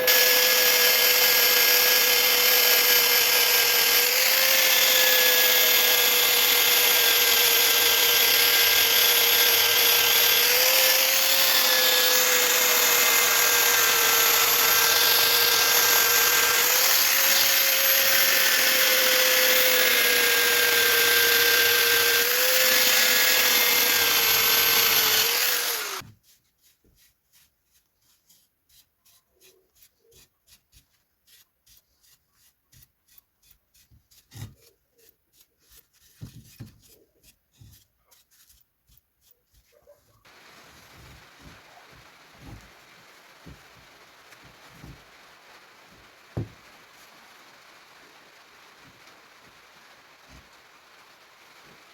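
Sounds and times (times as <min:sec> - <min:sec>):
belt sander whining and rubbing: 0:00.0 - 0:26.1.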